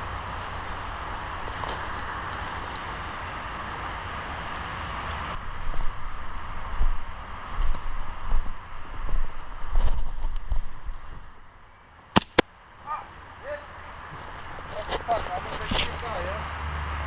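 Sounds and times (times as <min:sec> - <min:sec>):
steady rushing noise: 0:00.0 - 0:11.4
wind buffeting on microphone: 0:05.4 - 0:11.4.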